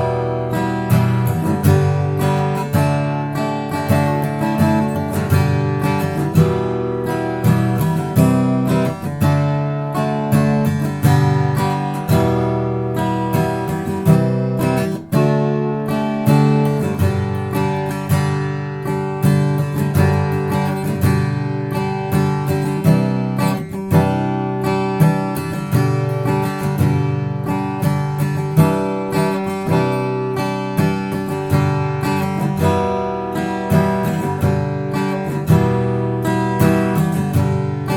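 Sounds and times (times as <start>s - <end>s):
acoustic guitar strumming: 0.0s - 37.9s.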